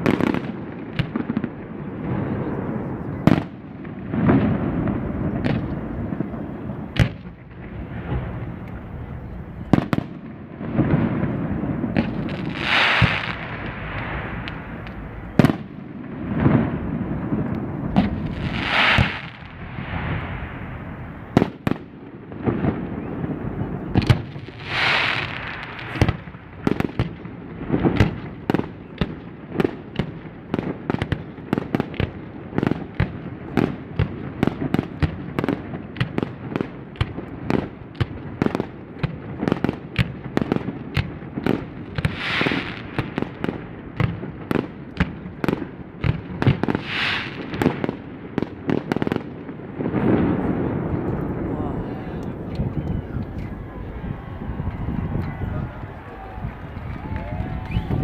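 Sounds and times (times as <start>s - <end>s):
fireworks bursting in sharp bangs: 0.0s - 52.7s
hissing crackling firework bursts: 10.2s - 21.4s, 22.4s - 28.2s, 41.4s - 51.5s.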